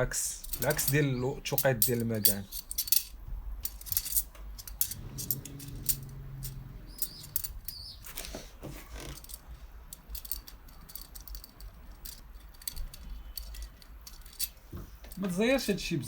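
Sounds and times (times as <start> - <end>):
wire spokes clicking and clinking: 0.4 - 8.2, 8.9 - 15.8.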